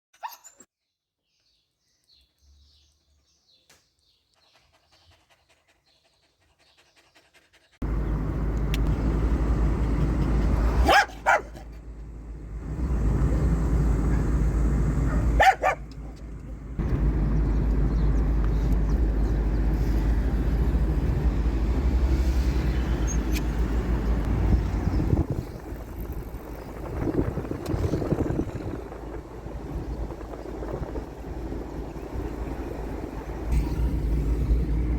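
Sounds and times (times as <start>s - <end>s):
dog barking: 10.8s - 11.8s, 15.0s - 16.2s.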